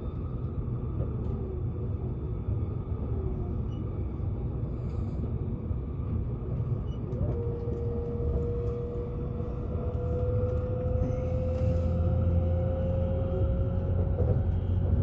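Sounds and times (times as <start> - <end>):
electric train rumbling: 0.0 - 15.0.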